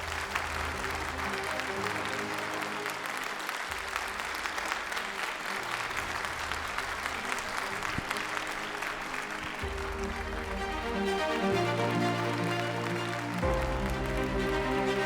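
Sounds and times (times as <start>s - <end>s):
audience applauding: 0.0s - 15.0s
background music low notes: 5.5s - 15.0s.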